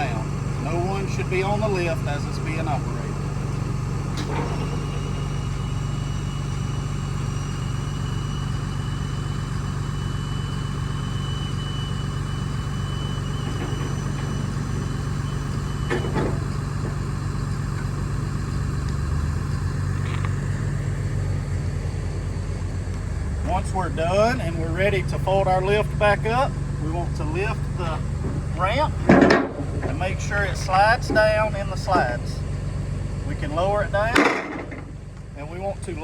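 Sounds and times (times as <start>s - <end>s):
thin high whine: 0.0s - 18.8s
truck engine idling: 0.0s - 36.0s.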